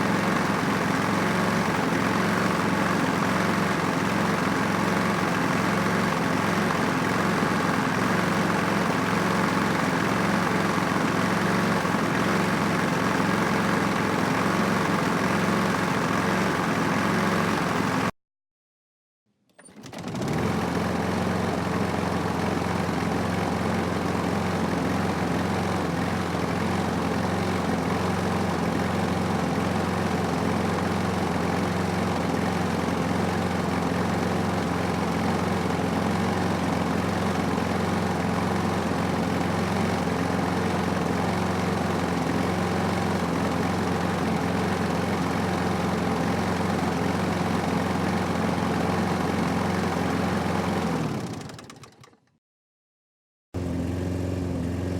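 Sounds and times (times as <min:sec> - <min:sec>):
lawn mower engine running: 0:00.0 - 0:18.1, 0:19.7 - 0:52.2, 0:53.6 - 0:54.9.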